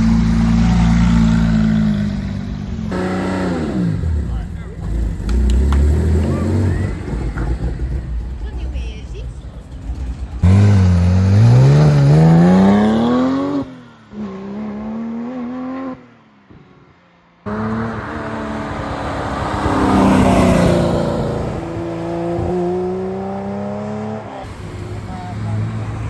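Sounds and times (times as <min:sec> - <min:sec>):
sports car engine accelerating: 0:00.0 - 0:08.6, 0:09.5 - 0:16.5, 0:17.4 - 0:26.0
car sweeping past: 0:17.5 - 0:26.0.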